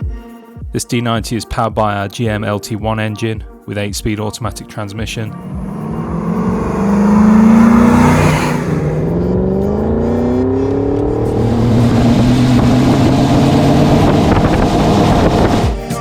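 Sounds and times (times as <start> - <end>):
car engine accelerating: 5.1 - 15.7.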